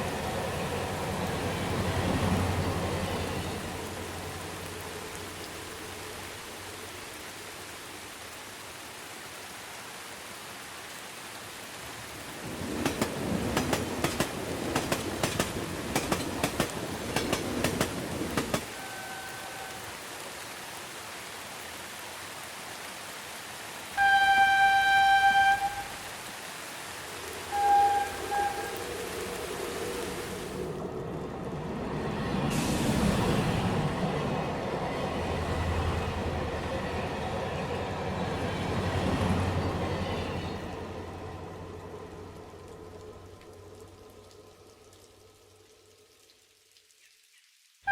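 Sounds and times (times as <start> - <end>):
train rumbling on rails: 0.0 - 6.7, 11.8 - 20.0, 27.0 - 43.5
steady rain: 0.0 - 47.9
train wheels clacking on rails: 12.7 - 18.7
train horn: 18.6 - 20.0, 23.9 - 26.1, 27.4 - 29.2.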